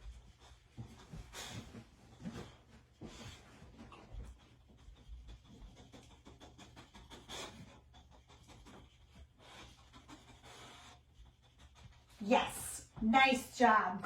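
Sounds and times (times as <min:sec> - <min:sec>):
dog panting and sniffing: 0:00.0 - 0:13.0.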